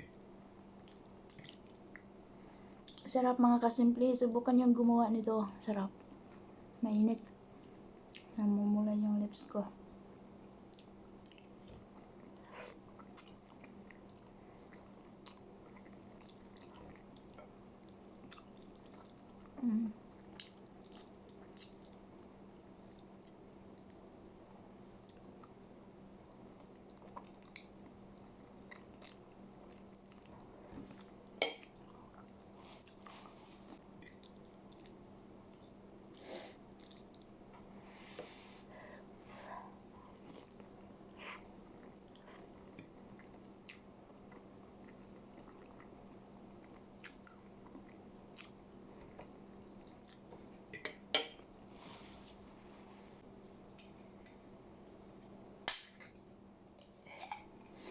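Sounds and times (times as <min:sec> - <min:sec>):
faint steady hum: 0:00.0 - 0:57.9
person chewing: 0:10.7 - 0:19.6, 0:28.6 - 0:33.4, 0:34.0 - 0:35.8, 0:36.7 - 0:37.3.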